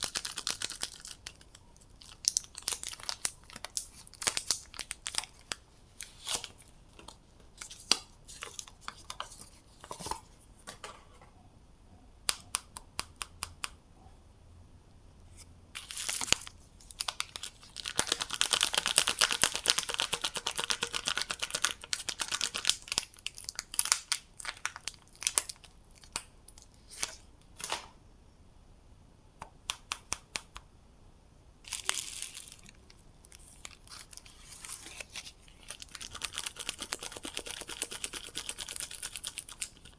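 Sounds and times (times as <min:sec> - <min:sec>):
wrappers crinkling: 0:15.8 - 0:26.1, 0:31.7 - 0:37.2
wrappers tearing: 0:31.7 - 0:37.2.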